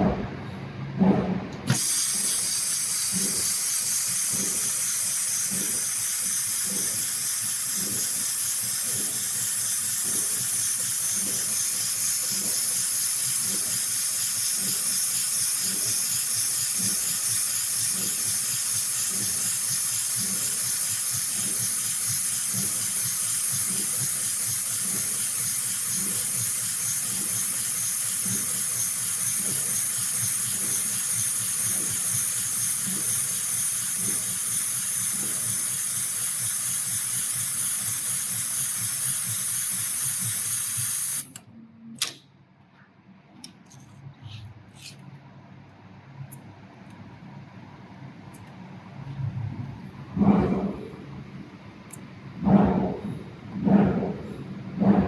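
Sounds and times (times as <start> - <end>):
sewing machine running: 1.7 - 41.4.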